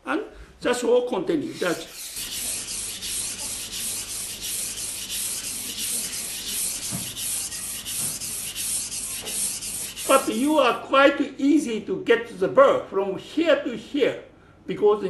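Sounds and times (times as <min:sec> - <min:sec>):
knife rasping on wet whetstone: 0:01.5 - 0:10.4.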